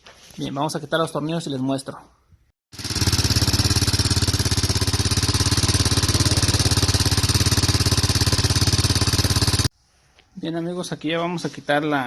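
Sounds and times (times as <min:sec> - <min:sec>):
impact wrench rattling: 0:02.8 - 0:09.7.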